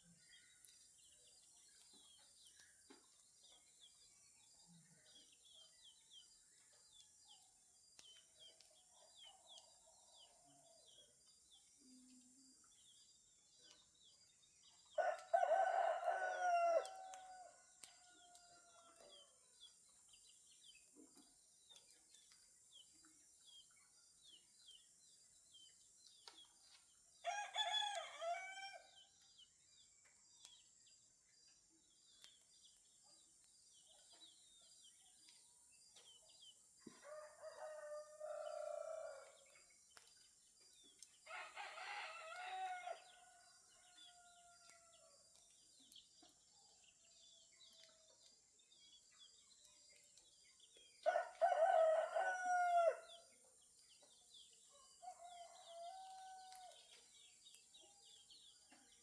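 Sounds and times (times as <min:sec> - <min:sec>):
small birds chirping: 0:00.0 - 0:41.3, 0:42.0 - 0:59.0
roosters crowing: 0:15.0 - 0:17.6, 0:51.1 - 0:53.0.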